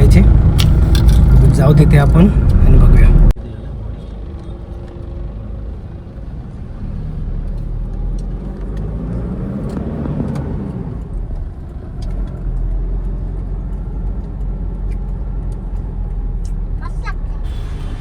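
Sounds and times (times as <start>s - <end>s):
car engine and road rumble: 0.0s - 18.0s.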